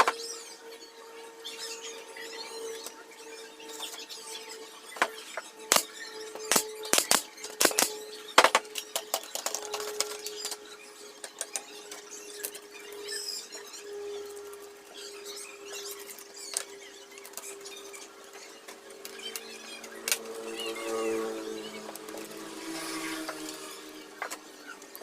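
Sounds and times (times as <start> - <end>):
steady high-pitched hum: 0.0 - 25.0
wooden parts and tools knocking: 6.5 - 10.2.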